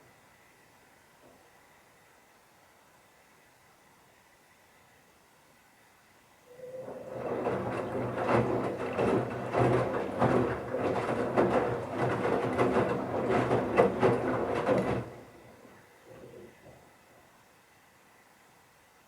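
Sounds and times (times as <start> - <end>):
washing machine motor hum: 6.5 - 16.8
wet towels tumbling knocks: 7.0 - 15.7.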